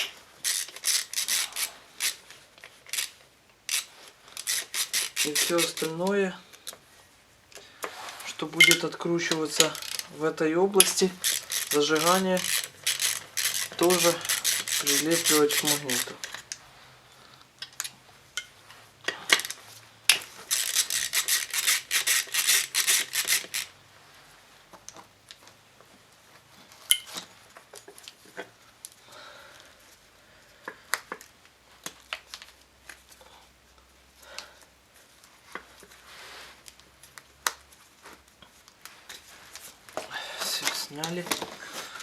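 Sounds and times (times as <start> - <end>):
metal clinking on metal: 8.6 - 9.0.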